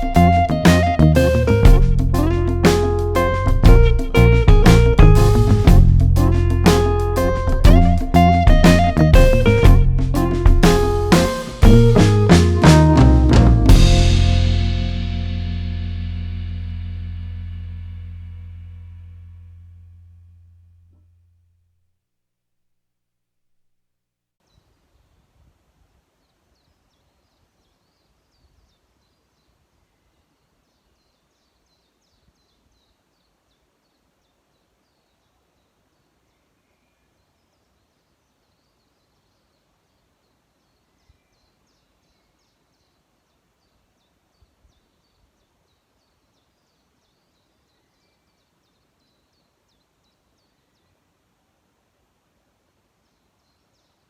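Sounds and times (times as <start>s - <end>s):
small birds chirping: 0.0s - 14.2s
low rumble: 0.0s - 20.2s.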